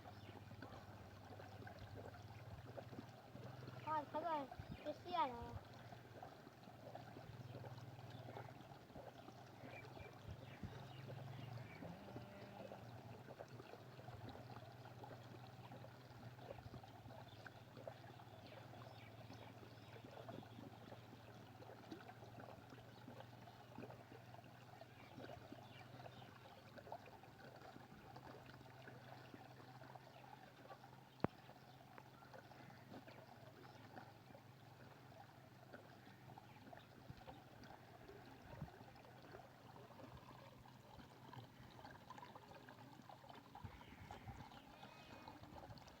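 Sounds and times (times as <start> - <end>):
water running and trickling: 0.0 - 46.0.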